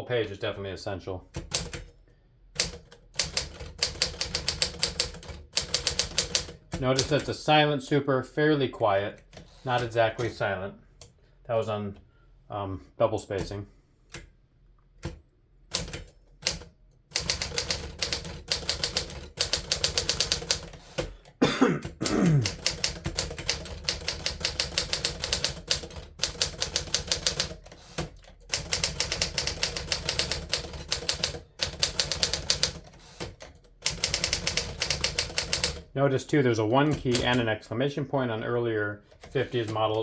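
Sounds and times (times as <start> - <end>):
manual typewriter keystrokes: 1.3 - 2.0, 2.6 - 7.4, 15.0 - 35.9, 36.6 - 37.5, 39.1 - 40.0.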